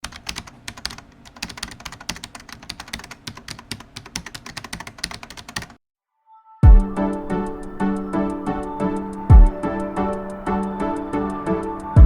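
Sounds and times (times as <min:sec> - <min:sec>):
typing on a keyboard: 0:00.0 - 0:05.8.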